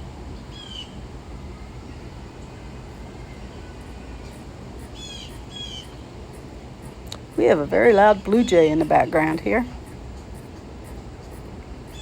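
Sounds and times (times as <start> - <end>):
steady low rumble: 0.0 - 12.0
blue jay calling: 2.9 - 12.0.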